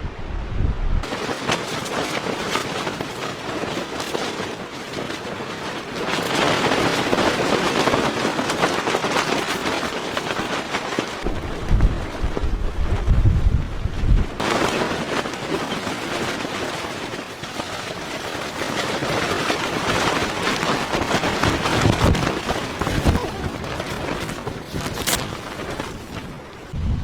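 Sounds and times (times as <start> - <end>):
crackling and popping: 17.5 - 26.4.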